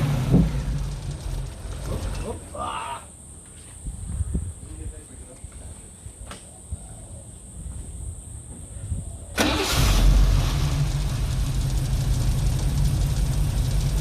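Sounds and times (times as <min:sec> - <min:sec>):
car engine starting: 0:00.0 - 0:02.2, 0:09.4 - 0:14.0
engine idling unevenly: 0:00.0 - 0:02.5, 0:10.4 - 0:14.0.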